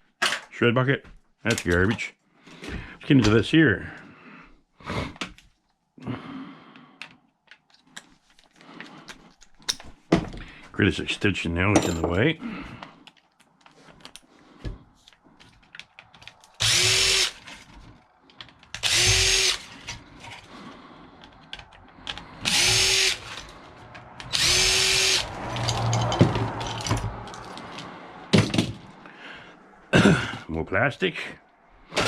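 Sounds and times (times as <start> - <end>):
parts clicking and rattling: 7.0 - 10.5, 11.7 - 29.1
power drill running: 16.6 - 17.5, 18.8 - 19.9, 22.4 - 23.6, 24.2 - 25.4.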